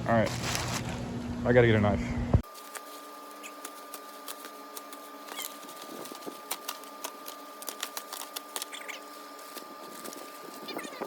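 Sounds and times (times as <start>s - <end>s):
steady electrical hum: 0.0s - 11.0s
packaging crinkling and clicking: 3.6s - 10.3s.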